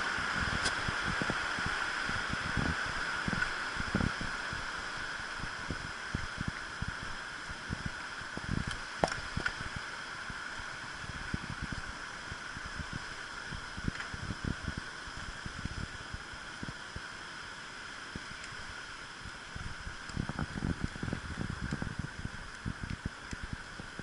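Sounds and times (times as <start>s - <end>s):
wind buffeting microphone: 0.3s - 4.7s, 19.6s - 24.0s.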